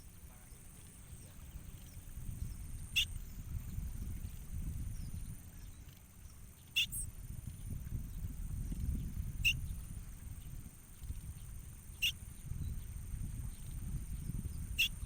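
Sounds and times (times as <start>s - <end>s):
low wind rumble: 0.0s - 15.0s
bird calls: 0.3s - 3.4s, 4.9s - 7.1s, 11.4s - 12.8s, 14.8s - 15.0s.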